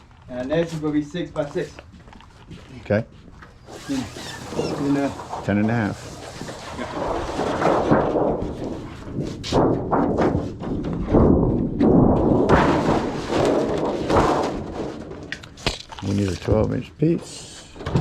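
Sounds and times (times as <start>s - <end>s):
wobbling sheet metal rumble: 3.7s - 15.3s
thuds of sheet metal: 7.0s - 15.3s.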